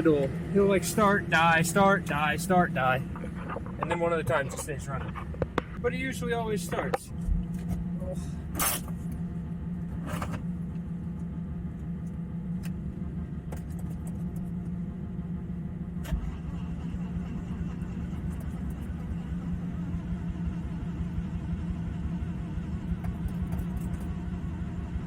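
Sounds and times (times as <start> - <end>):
rotary engine idling: 16.0 - 25.0.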